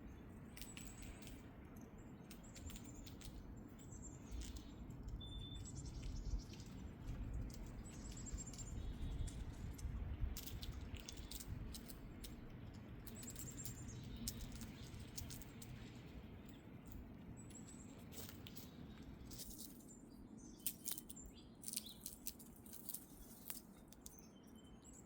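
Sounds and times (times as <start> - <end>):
faint bird chirps: 0.0 - 9.9, 24.0 - 25.0
low wind rumble: 0.0 - 20.6
squirrels cracking nuts: 0.5 - 19.9, 20.5 - 25.0.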